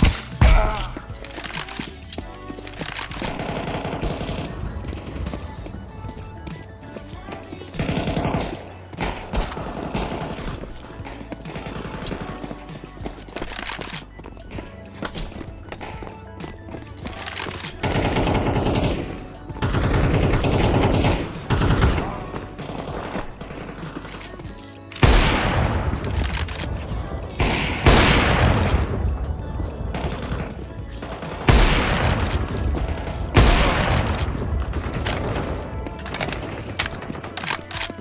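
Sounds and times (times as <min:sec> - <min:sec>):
music: 0:00.0 - 0:38.0
gunfire bursts: 0:07.7 - 0:10.8, 0:17.2 - 0:29.1, 0:29.9 - 0:38.0.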